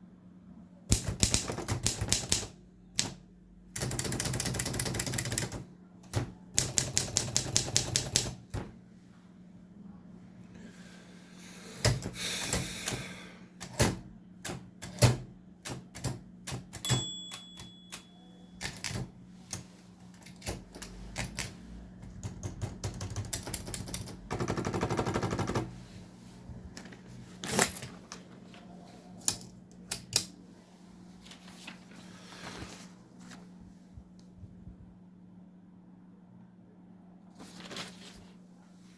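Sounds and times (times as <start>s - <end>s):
typewriter keys clacking: 0.9s - 3.2s, 3.8s - 8.4s, 13.6s - 18.0s, 18.6s - 19.6s, 20.2s - 25.7s
typewriter ratcheting: 0.9s - 8.4s
typewriter bell ringing: 16.8s - 18.9s.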